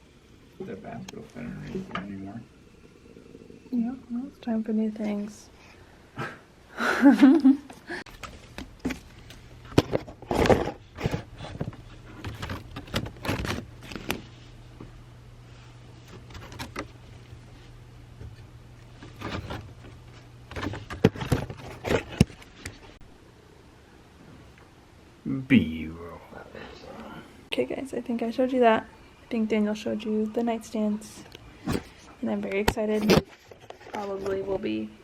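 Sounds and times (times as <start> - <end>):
faint low hum: 0.0 - 35.0
objects being handled: 18.2 - 23.0.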